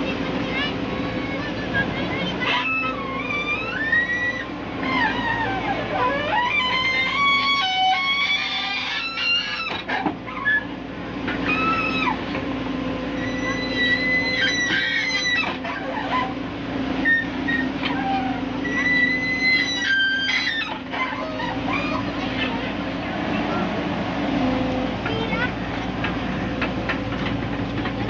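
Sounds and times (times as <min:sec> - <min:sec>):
excavator diesel engine running: 0:00.0 - 0:28.0
high-pitched metal squeals: 0:02.4 - 0:10.7, 0:13.1 - 0:16.4, 0:17.0 - 0:22.5.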